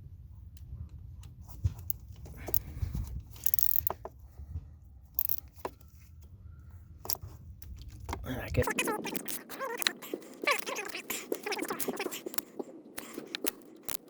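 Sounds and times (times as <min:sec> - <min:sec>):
hand tools clicking on nuts: 0:03.4 - 0:04.0, 0:05.2 - 0:05.7.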